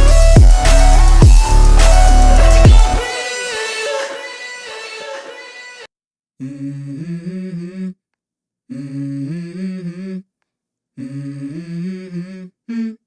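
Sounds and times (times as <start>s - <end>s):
bus musical horn: 2.4s - 5.9s.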